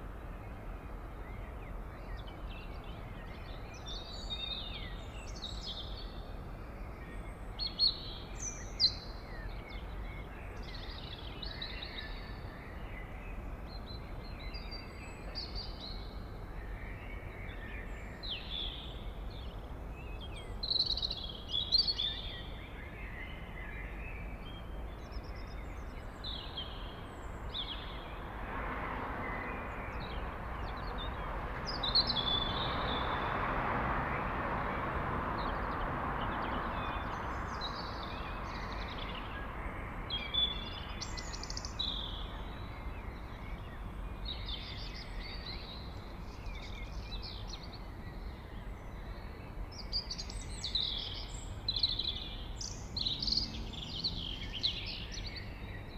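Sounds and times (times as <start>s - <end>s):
blackbird singing: 40.1s - 47.8s, 48.4s - 55.9s.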